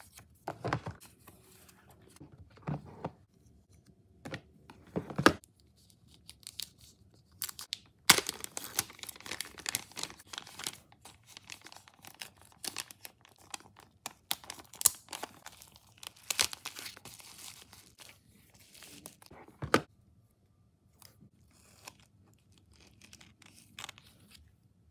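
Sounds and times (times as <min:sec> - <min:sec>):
plastic packaging crinkling and tearing: 0:06.1 - 0:19.3, 0:21.5 - 0:24.4.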